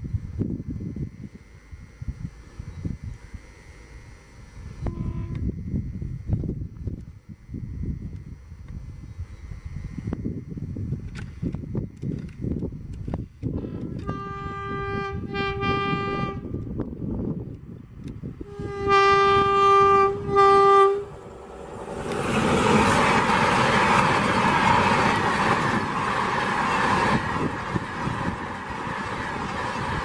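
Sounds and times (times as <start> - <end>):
train passing with rail noise: 0.0 - 30.0
locomotive horn blasts: 4.8 - 5.5, 13.6 - 16.7, 18.4 - 21.2.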